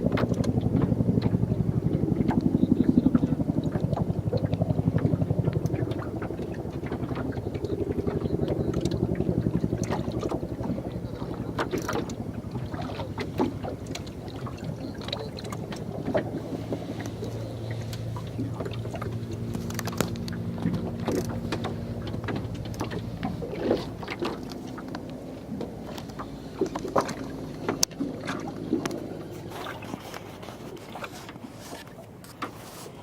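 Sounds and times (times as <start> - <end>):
boat engine at low revs: 0.0 - 33.0
knocks and clicks from gear: 17.0 - 30.4.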